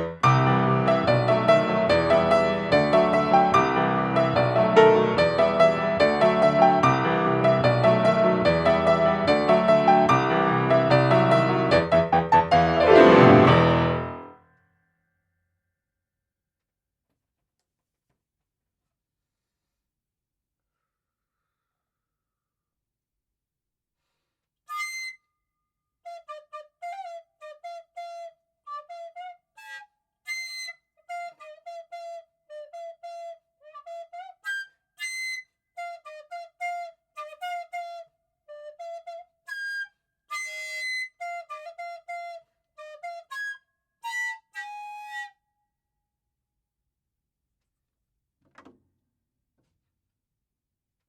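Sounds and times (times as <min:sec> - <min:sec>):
flute-like wind instrument tune: 0:00.0 - 0:14.2, 0:24.7 - 0:25.2, 0:26.1 - 0:45.4.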